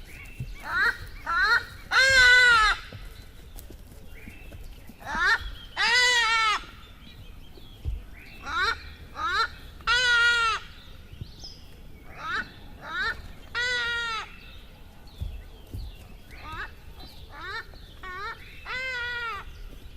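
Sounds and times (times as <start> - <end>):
upward-sweeping bird calls: 12.0 - 19.8.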